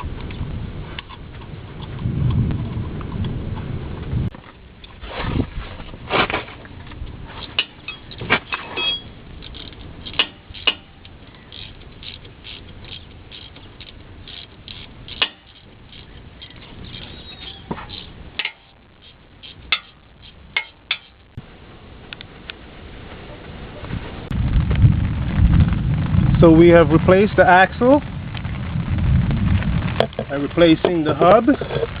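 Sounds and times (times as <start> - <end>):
metal tools clinking and clanking: 7.3 - 21.2.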